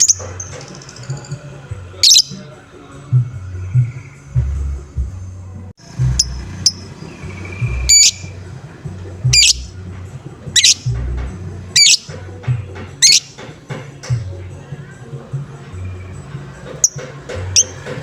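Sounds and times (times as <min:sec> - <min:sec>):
lovebird squawking: 0:00.0 - 0:01.3, 0:02.0 - 0:02.5, 0:06.1 - 0:08.4, 0:09.2 - 0:09.8, 0:10.5 - 0:11.1, 0:11.7 - 0:12.2, 0:13.0 - 0:13.5, 0:16.8 - 0:17.8
low thumping beat: 0:05.8 - 0:14.6.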